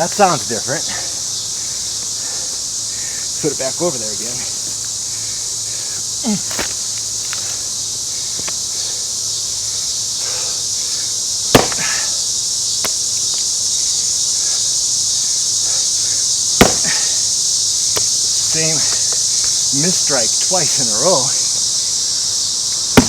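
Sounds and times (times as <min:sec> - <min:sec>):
man speaking: 0:00.0 - 0:01.1, 0:03.4 - 0:04.6, 0:18.4 - 0:21.6
high-pitched insect chorus: 0:00.0 - 0:23.0
axe striking wood: 0:11.5 - 0:12.0, 0:16.6 - 0:17.1.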